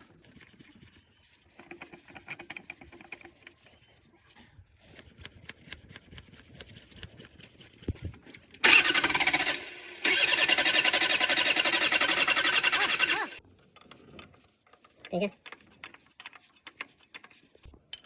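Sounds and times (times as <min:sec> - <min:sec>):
diesel engine cranking: 0:08.6 - 0:13.4.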